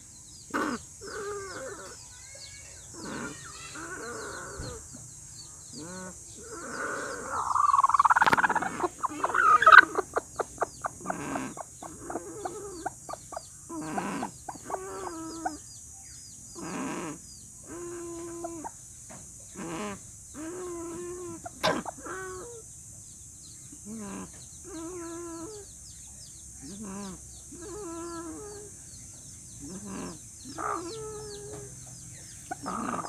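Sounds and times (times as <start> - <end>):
chicken snore-like sounds: 5.8 - 10.0, 32.6 - 33.0
chicken low drawn-out calls: 5.8 - 13.0
chicken clucking: 6.7 - 13.2.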